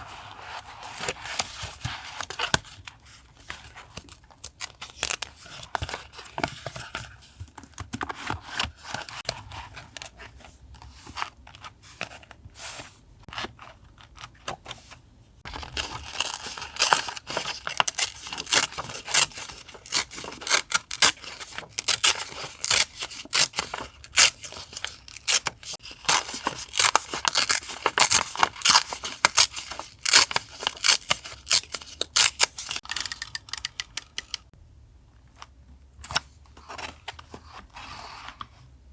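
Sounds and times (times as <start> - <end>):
scissors cutting paper: 15.6 - 34.5.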